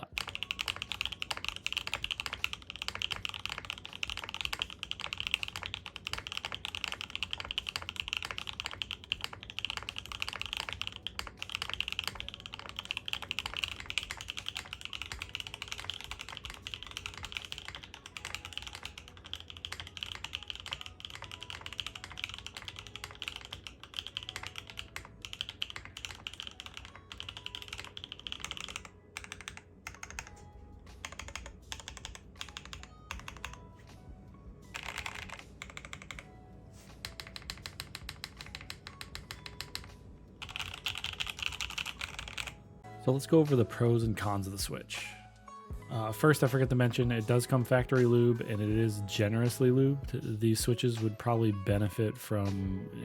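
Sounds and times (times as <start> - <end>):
rapid mechanical keyboard typing: 0.0 - 33.8, 34.7 - 42.6.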